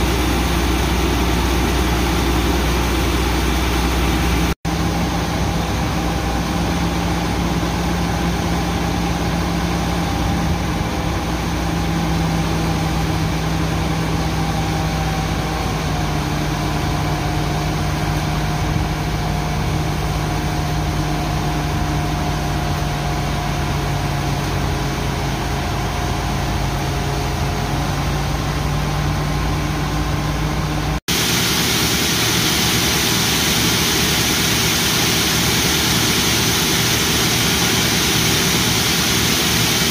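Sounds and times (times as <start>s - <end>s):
combine harvester droning: 0.0s - 39.9s
hissy machine noise: 31.1s - 39.9s.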